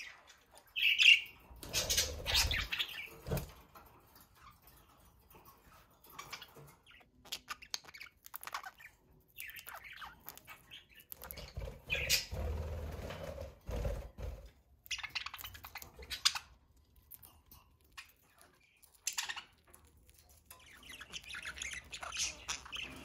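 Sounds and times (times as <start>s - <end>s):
budgerigars chirping: 0.0s - 3.5s, 6.1s - 12.6s, 14.8s - 16.6s, 18.0s - 23.0s
wings flapping and rustling: 1.6s - 3.8s, 11.3s - 14.6s.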